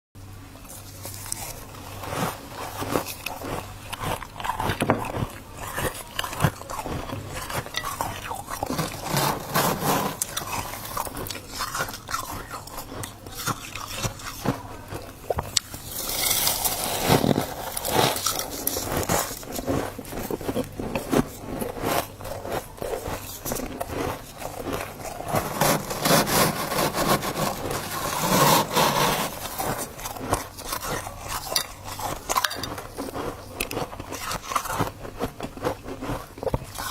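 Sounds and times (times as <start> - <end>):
person crunching frost: 0.6 - 36.9
frost scraping: 0.8 - 12.7, 15.7 - 33.0.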